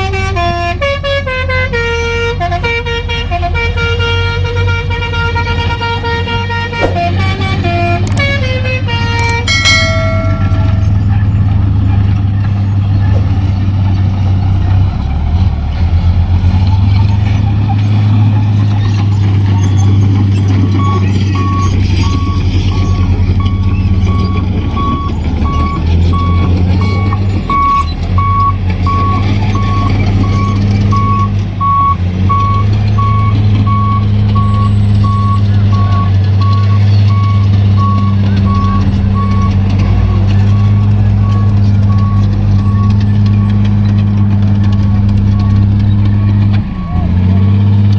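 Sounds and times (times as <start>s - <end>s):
truck diesel engine droning: 0.0s - 47.9s
reversing alarm beeping: 20.8s - 43.6s.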